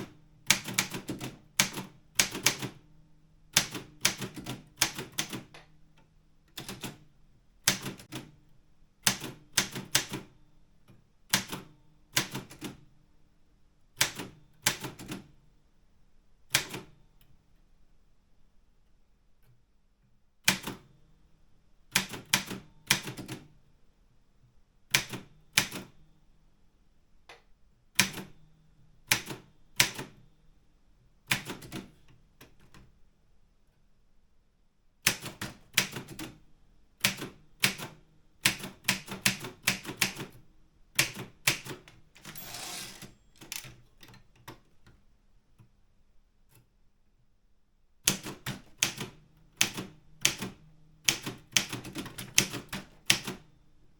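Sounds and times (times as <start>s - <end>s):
typewriter keys clacking: 42.2s - 44.1s.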